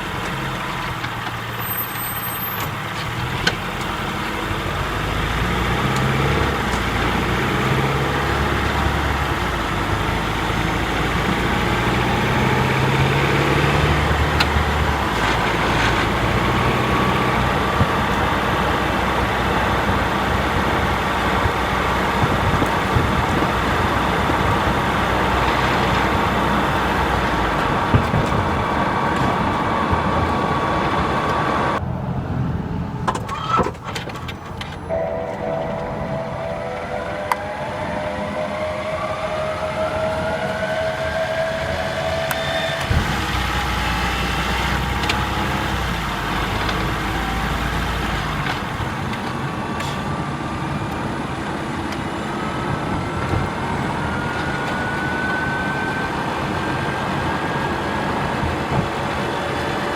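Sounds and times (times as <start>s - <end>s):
car engine running: 0.0s - 59.9s
thin whine: 34.8s - 45.7s.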